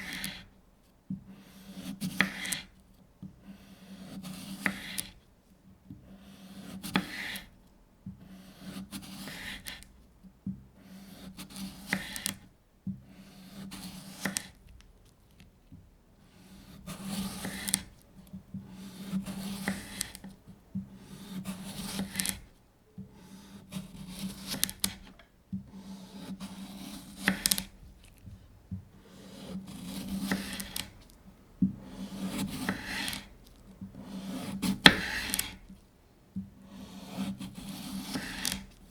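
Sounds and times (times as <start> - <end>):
knife slicing cucumber: 1.5 - 2.8, 3.6 - 5.2, 6.2 - 7.5, 8.4 - 9.9, 10.8 - 12.4, 13.1 - 14.6, 16.4 - 28.2, 29.0 - 35.8, 36.6 - 38.9.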